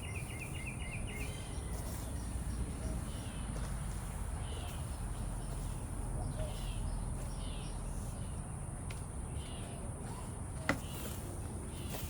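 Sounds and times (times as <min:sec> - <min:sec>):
bird chirps: 0:00.0 - 0:03.8, 0:04.4 - 0:08.5.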